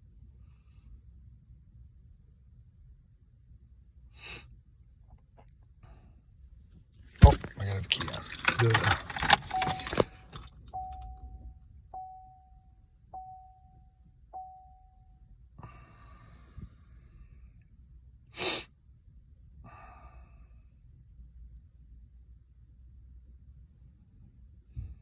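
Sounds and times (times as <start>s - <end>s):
short noises: 7.2s - 10.6s
car warning chime dinging: 9.3s - 15.2s.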